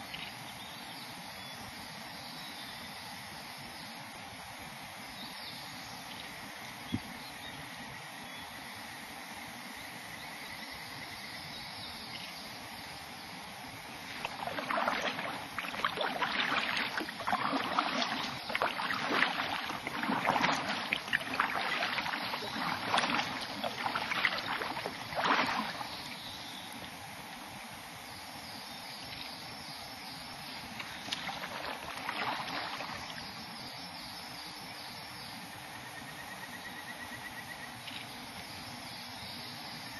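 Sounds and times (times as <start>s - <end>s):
insect chirring: 12.1s - 27.0s
kayak paddle strokes splashing: 13.9s - 26.8s, 30.7s - 33.4s.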